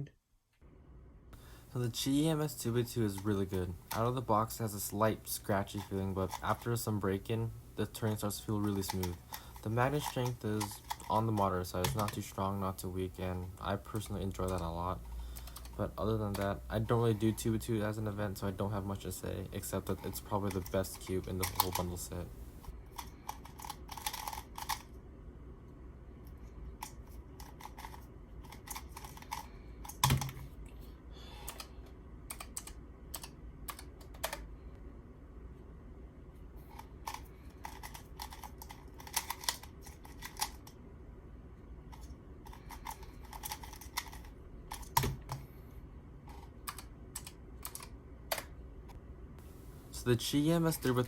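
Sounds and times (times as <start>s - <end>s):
speed cube clicking: 23.0s - 24.9s, 37.1s - 40.6s.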